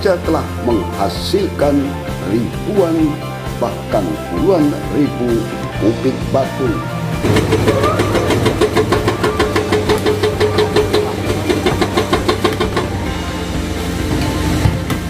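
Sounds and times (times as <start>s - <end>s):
diesel engine running: 6.9s - 15.0s
hydraulic breaker hammering rock: 7.2s - 13.1s.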